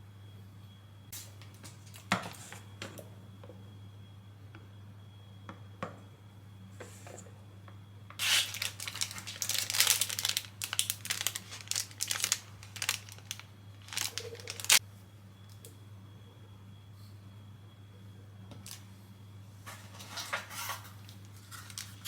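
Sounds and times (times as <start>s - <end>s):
steady low hum: 0.0s - 22.0s
plastic packaging crinkling and tearing: 8.2s - 14.8s, 20.1s - 22.0s.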